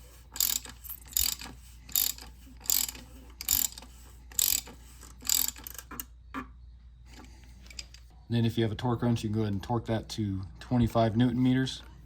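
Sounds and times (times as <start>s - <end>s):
socket ratchet clicking: 4.4s - 5.9s.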